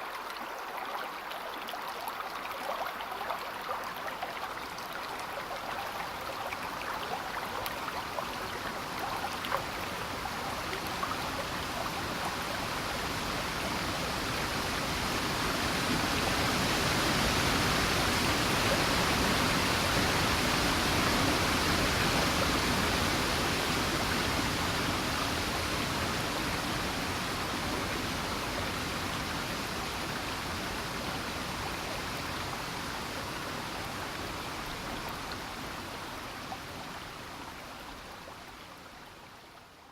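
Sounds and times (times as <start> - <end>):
stream water rushing: 0.0 - 39.6.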